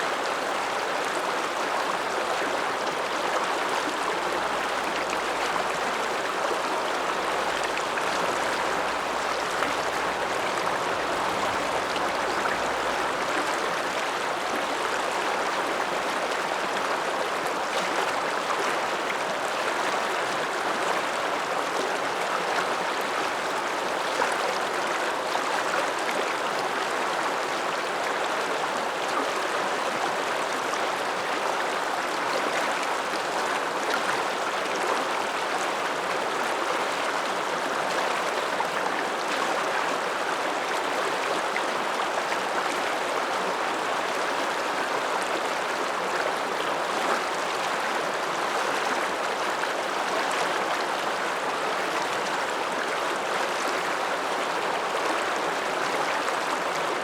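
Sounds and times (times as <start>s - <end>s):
river rushing: 0.0s - 29.2s.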